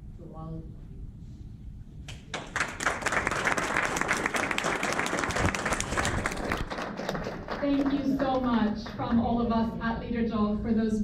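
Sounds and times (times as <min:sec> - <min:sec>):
audience applauding: 0:02.3 - 0:09.0.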